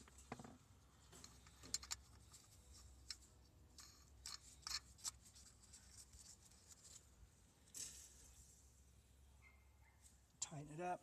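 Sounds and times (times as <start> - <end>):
faint clicks and scraping: 0.0 - 7.1.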